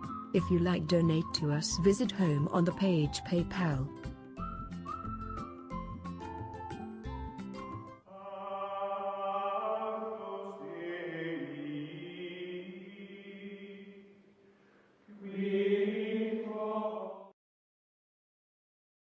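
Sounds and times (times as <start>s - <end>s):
choir-like chanting chords: 8.1s - 14.2s, 15.1s - 17.4s.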